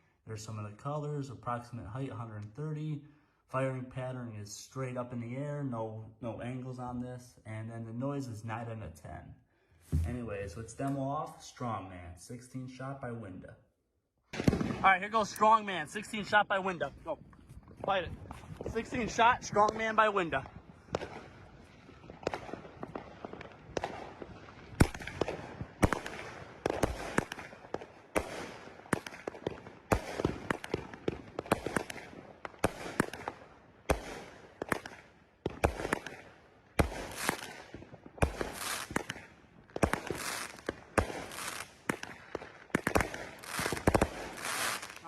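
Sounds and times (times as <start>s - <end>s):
firework launch thumps: 9.9s - 10.4s
firework crackling: 20.8s - 36.2s, 36.8s - 45.0s
firework bursts: 20.8s - 45.0s.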